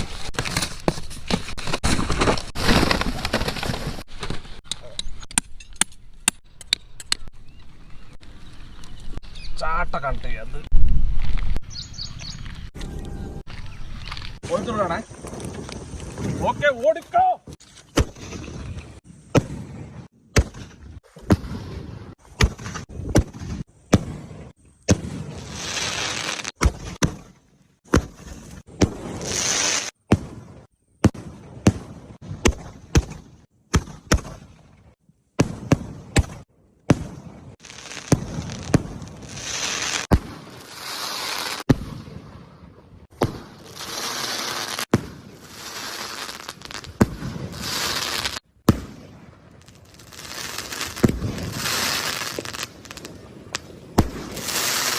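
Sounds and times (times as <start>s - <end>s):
fireworks sharp bangs: 43.1s - 54.9s.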